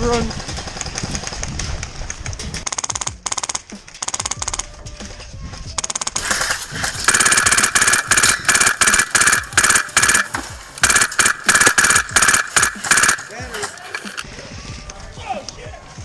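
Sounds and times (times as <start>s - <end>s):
airsoft gun full-auto bursts: 2.6s - 4.7s, 5.8s - 14.2s.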